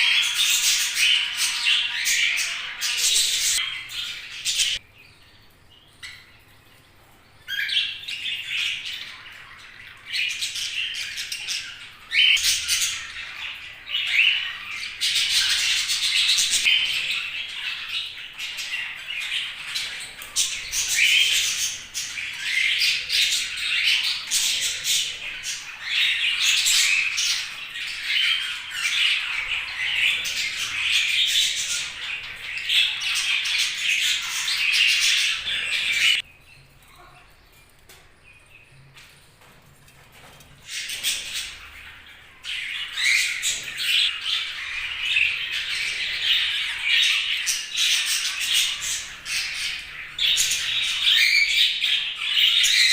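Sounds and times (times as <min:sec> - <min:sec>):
budgerigars chirping and squawking: 0:00.0 - 0:04.8, 0:07.4 - 0:37.9, 0:40.2 - 0:52.9.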